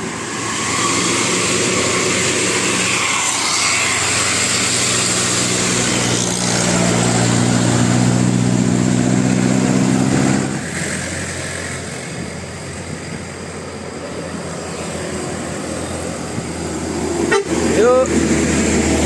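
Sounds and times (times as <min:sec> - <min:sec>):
bus engine running: 0:00.0 - 0:19.0.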